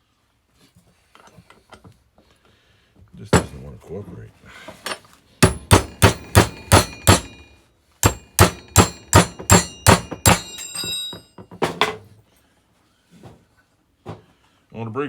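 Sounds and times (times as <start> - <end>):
hammer blows on steel: 5.4 - 11.3.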